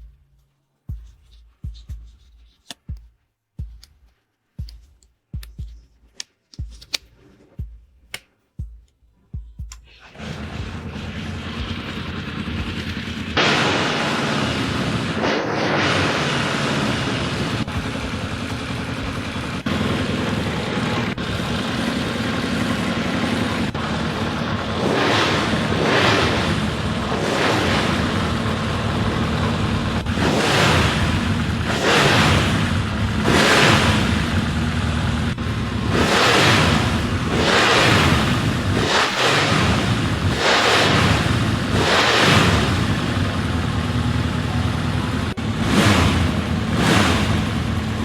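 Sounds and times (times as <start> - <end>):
motorcycle engine running: 10.0 - 48.0.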